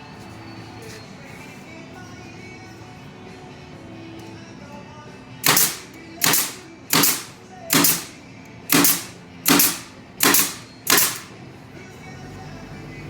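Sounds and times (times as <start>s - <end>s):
nails hammered into wood: 5.4s - 11.3s.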